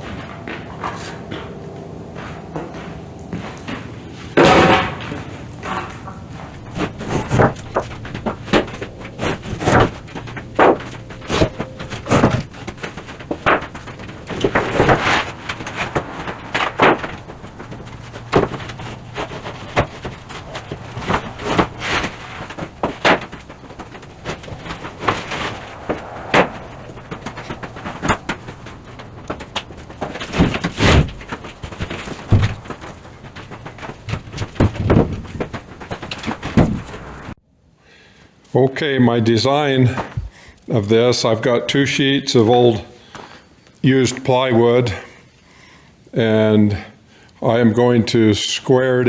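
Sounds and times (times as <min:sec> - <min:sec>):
wooden boards knocking and clattering: 0:03.6 - 0:37.4.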